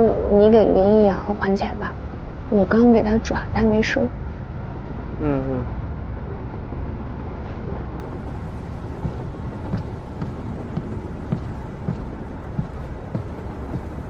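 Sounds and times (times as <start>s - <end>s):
steady low rumble: 0.0s - 14.0s
footsteps dull thuds: 8.0s - 14.0s.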